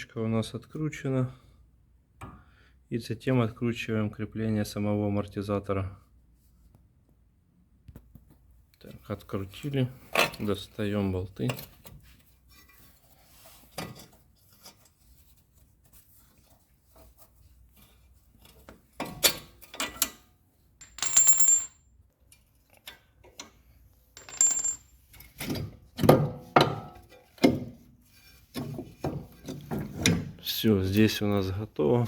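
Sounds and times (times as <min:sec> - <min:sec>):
metal bolts and tools clinking: 0:18.4 - 0:27.6.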